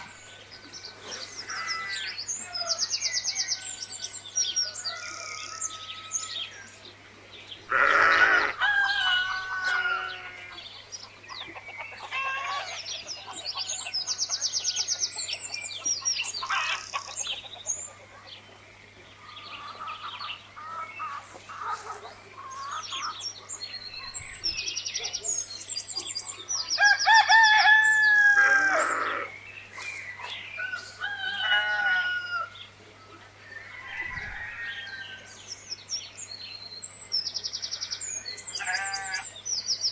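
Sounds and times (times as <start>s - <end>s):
small birds chirping: 0.0s - 31.6s, 32.4s - 39.9s
rooster crowing: 7.8s - 10.6s, 26.8s - 29.3s, 30.6s - 32.6s, 33.4s - 35.4s.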